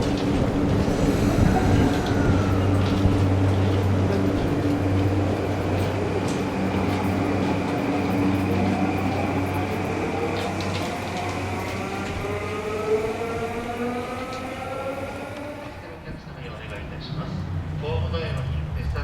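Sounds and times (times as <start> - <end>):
traction motor whine: 0.0 - 9.8
electric train pulling out: 0.0 - 19.0.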